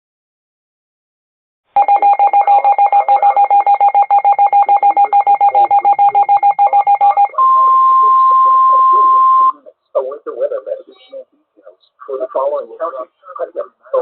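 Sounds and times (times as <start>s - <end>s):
rapid electronic beeps: 1.8s - 9.6s.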